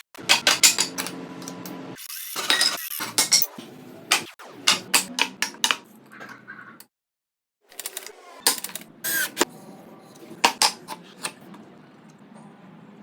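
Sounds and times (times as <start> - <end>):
hard objects clicking and knocking: 10.4 - 11.4.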